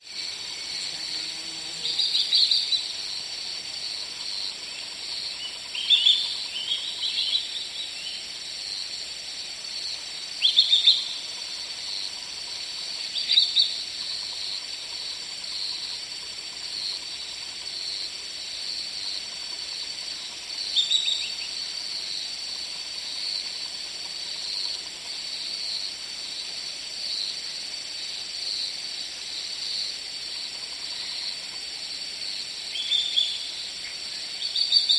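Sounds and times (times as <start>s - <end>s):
insect drone: 0.0s - 34.9s
bird chirping: 32.7s - 34.9s.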